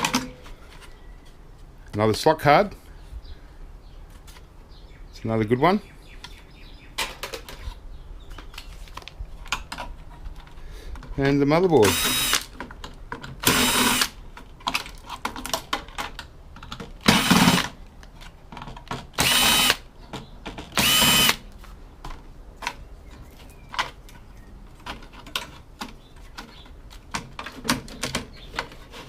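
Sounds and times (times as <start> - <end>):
cordless drill motor: 11.8 - 12.5, 13.4 - 14.2, 17.1 - 17.6, 19.2 - 19.8, 20.8 - 21.4.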